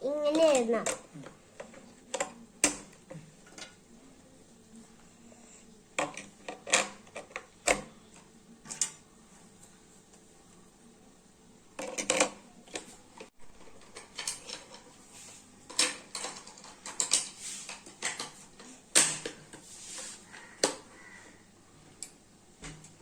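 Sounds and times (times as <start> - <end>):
plastic toy parts clattering: 11.8 - 12.9, 13.5 - 15.0, 15.7 - 19.4.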